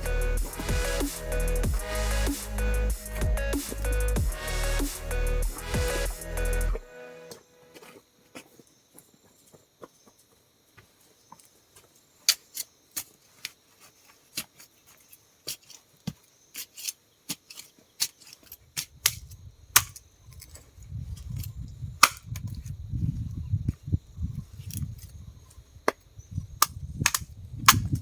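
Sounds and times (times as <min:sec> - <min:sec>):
wind buffeting microphone: 0:20.8 - 0:28.0.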